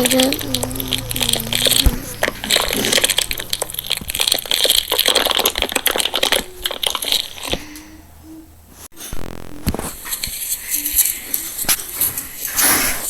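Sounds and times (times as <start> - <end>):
slime crackling and popping: 0.0 - 7.8.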